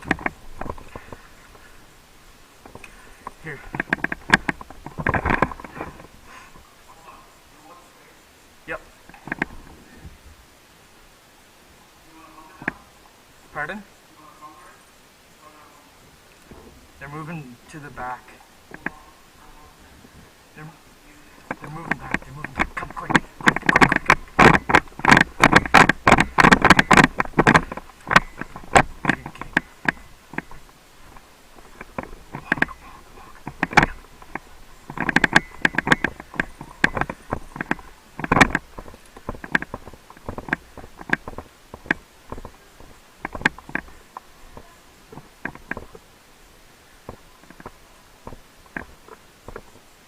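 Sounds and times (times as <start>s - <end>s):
sharp clicks and knocks: 0.0s - 1.7s, 2.6s - 6.2s, 9.0s - 9.8s, 17.9s - 19.0s, 21.4s - 46.1s, 47.0s - 49.8s.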